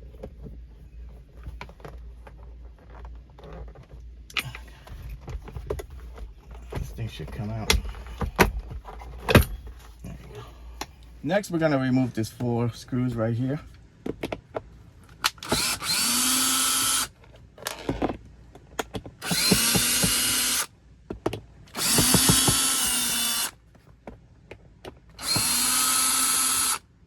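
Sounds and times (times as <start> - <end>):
cordless drill whining: 15.3 - 17.1, 19.2 - 20.7, 21.7 - 23.6, 25.2 - 26.9.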